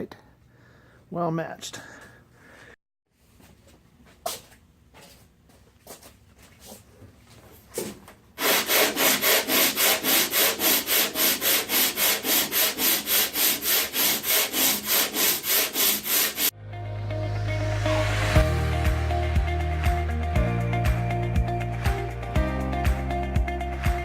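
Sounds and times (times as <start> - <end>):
hand sanding strokes: 8.4 - 16.5.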